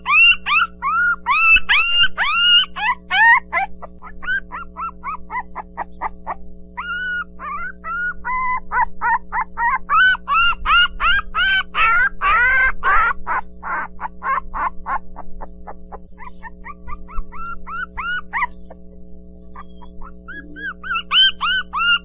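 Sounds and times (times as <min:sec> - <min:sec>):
puppies yipping and whimpering: 0:00.0 - 0:22.0.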